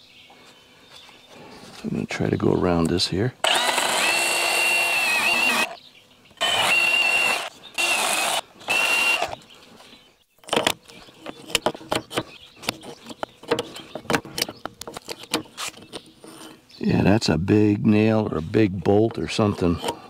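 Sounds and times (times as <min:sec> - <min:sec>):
power tool whining in bursts: 0:03.4 - 0:05.8, 0:06.4 - 0:09.4.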